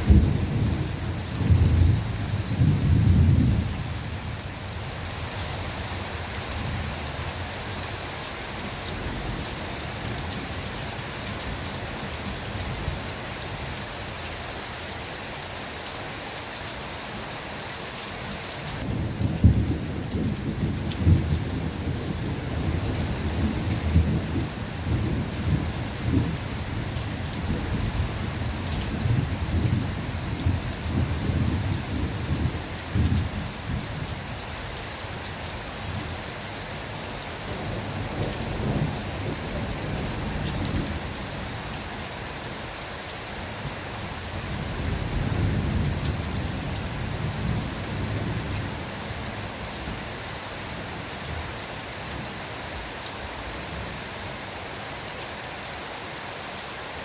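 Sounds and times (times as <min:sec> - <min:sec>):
low thunder rumbling: 0:00.0 - 0:03.8, 0:18.8 - 0:34.2, 0:37.5 - 0:41.7
steady rain in a forest: 0:00.0 - 0:57.0.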